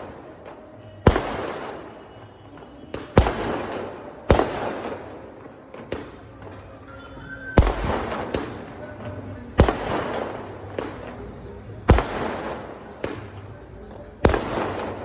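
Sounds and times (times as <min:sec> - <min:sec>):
sharp loud bangs: 0:02.9 - 0:05.1.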